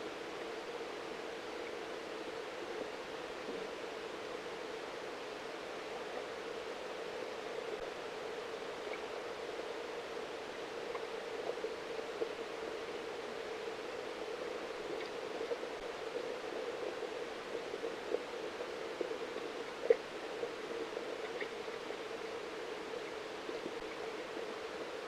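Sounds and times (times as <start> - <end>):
muffled underwater hum: 0.1 - 25.0
faint ticks: 8.8 - 9.1, 10.8 - 13.0, 13.9 - 25.0.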